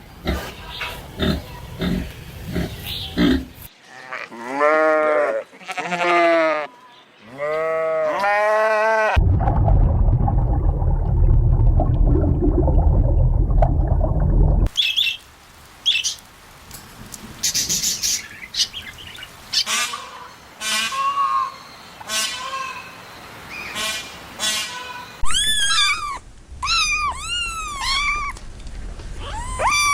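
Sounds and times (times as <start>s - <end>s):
birds chirping and squawking: 0.3s - 3.7s, 17.4s - 21.6s
bleat-like animal call: 3.9s - 9.2s
loud low noise: 9.2s - 14.7s.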